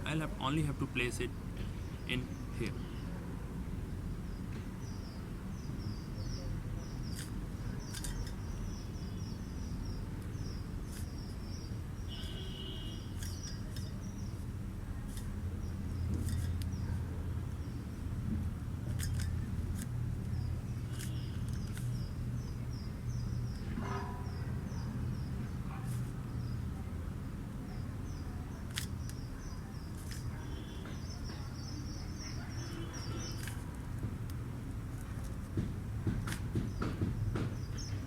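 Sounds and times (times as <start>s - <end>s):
bird chirping: 4.3s - 14.4s.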